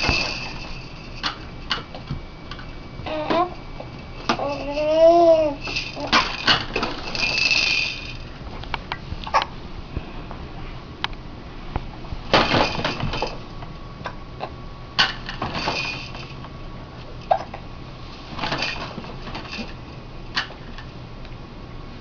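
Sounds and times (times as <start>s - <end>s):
person hiccuping: 17.3s - 17.6s.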